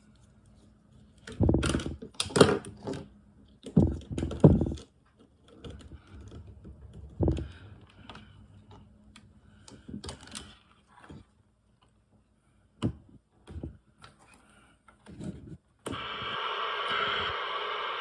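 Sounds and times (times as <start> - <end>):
radio static hiss: 15.9 - 18.0.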